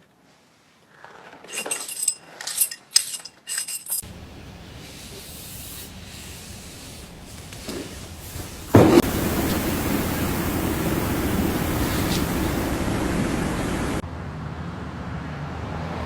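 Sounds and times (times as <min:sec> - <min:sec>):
steady hiss: 0:04.0 - 0:14.0
sudden thump: 0:08.7 - 0:10.0.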